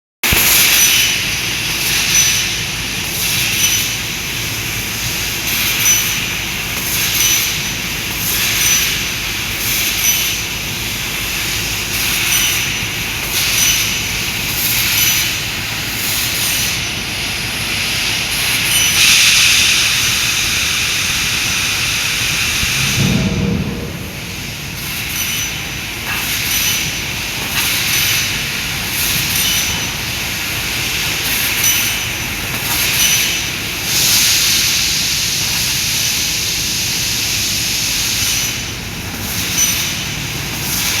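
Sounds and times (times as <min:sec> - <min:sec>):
laser cutter hissing: 0:00.3 - 0:41.0
low rumble: 0:22.6 - 0:25.1.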